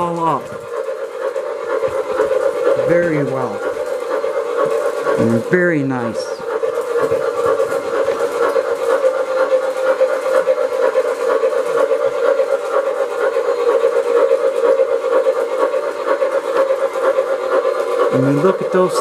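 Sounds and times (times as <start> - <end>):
model train running: 0.0 - 19.0
wheels rattling on rails: 0.0 - 19.0.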